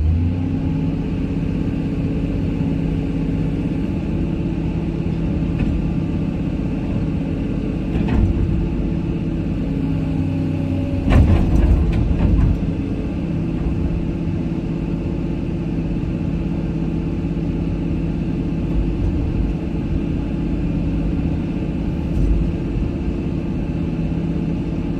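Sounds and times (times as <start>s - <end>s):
excavator diesel engine running: 0.0s - 24.9s
clanking knocks: 10.9s - 14.0s.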